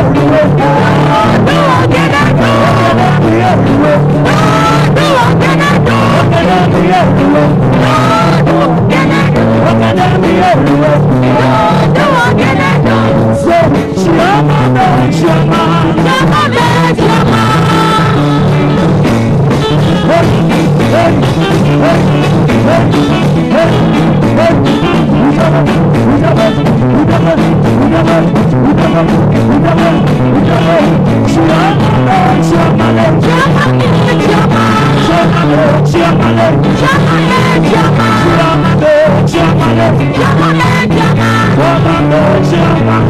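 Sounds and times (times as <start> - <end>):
gospel band music: 0.0 - 43.0
person singing: 0.0 - 43.0
walking bass line: 0.0 - 43.0.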